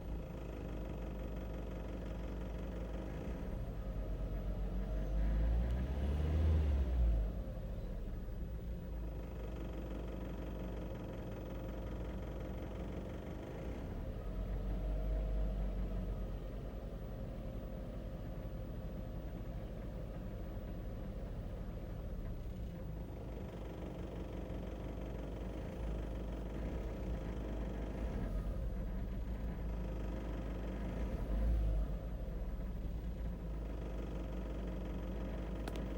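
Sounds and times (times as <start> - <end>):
engine knock: 0.0 - 3.6, 8.4 - 14.8, 18.0 - 35.9
car engine revving and idling: 0.0 - 35.9.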